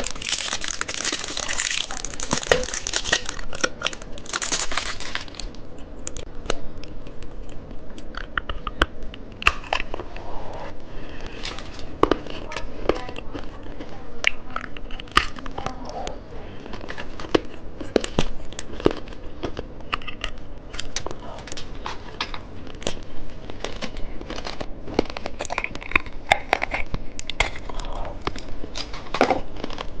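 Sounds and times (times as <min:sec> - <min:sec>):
plastic wrapper crinkling and tearing: 0:00.0 - 0:06.3, 0:16.7 - 0:30.0
candy crunching: 0:00.0 - 0:30.0.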